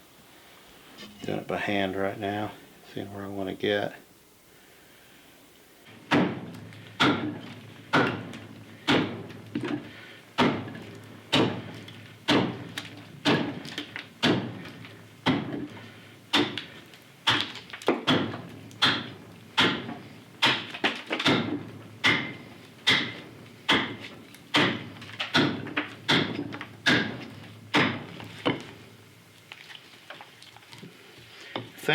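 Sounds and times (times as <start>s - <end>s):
axe chopping wet wood: 6.1s - 9.4s, 10.4s - 15.7s, 16.3s - 28.7s.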